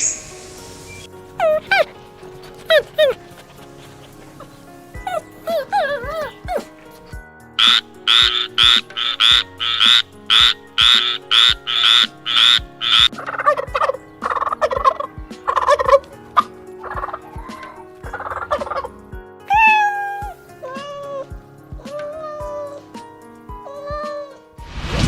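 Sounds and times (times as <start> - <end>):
farm fowl calling: 7.6 - 18.9.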